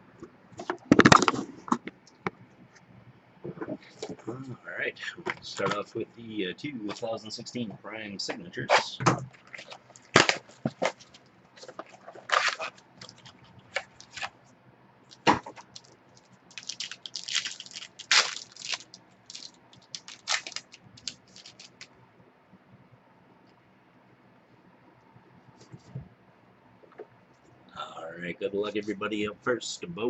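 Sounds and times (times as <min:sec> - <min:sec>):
packaging crinkling and tearing: 0:09.4 - 0:14.3, 0:15.1 - 0:21.9.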